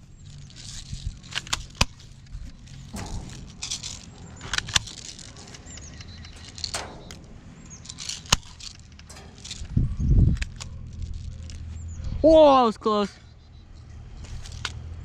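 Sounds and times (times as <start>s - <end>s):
rustling: 0.0s - 11.9s
low steady hum: 0.0s - 13.9s.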